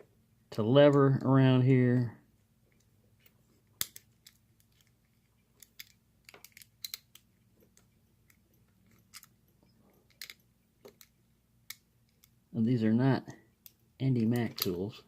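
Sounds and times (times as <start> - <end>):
lock picks clicking in padlock: 5.6 - 9.4, 10.0 - 12.4.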